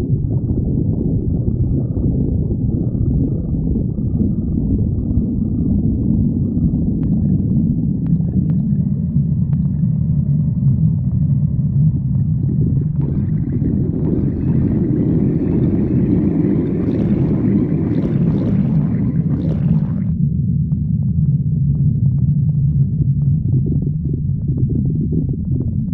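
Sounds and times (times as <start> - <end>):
stomach growling: 0.0 - 20.2.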